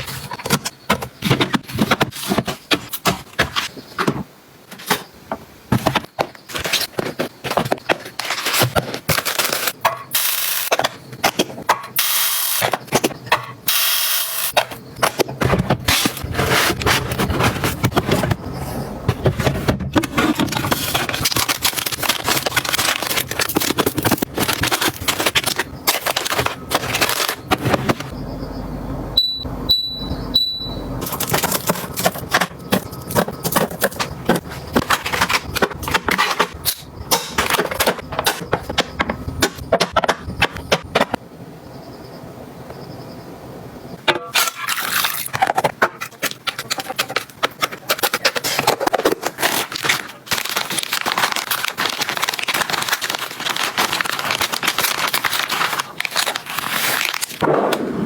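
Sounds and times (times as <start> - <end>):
clatter of items being handled: 0.0 - 10.1, 14.6 - 28.1, 31.0 - 41.2, 45.2 - 57.4
short high electronic beeps: 29.2 - 31.0.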